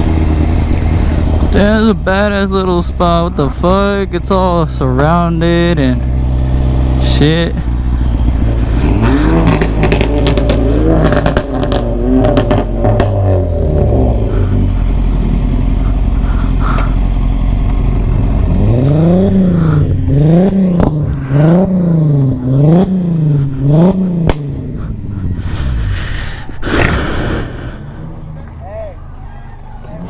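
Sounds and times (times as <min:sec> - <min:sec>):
vehicle engine revving: 0:00.0 - 0:30.0
sharp exhaust pop: 0:14.3 - 0:22.0, 0:22.6 - 0:28.6.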